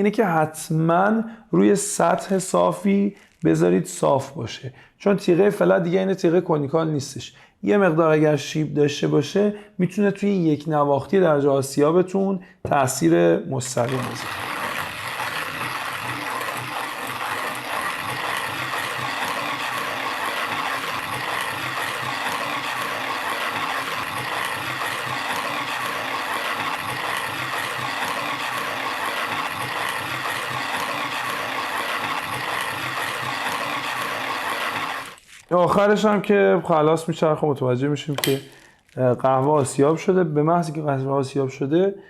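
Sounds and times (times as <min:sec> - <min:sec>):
manual coffee grinder grinding: 0:02.0 - 0:03.8, 0:13.6 - 0:36.2, 0:38.1 - 0:39.8.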